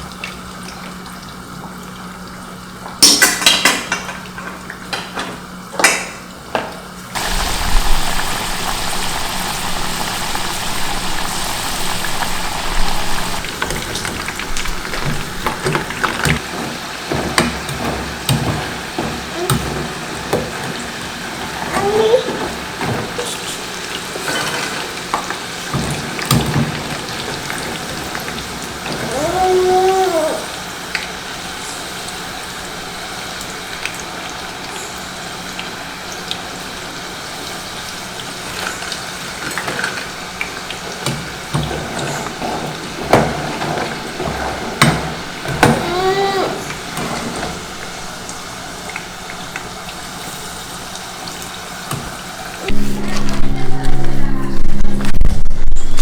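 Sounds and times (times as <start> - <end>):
frying sizzle in pan: 0.0 - 56.0
food sizzling in a pan: 7.2 - 16.0
high held tone: 52.6 - 56.0.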